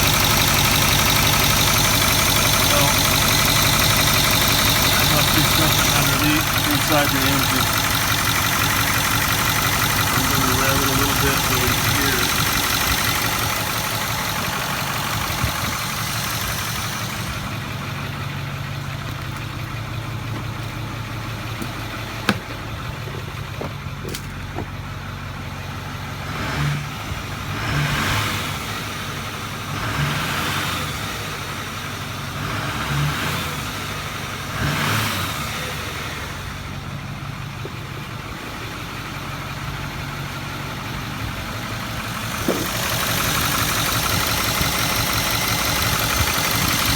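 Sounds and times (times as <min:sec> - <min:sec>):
diesel engine idling: 0:00.0 - 0:46.9.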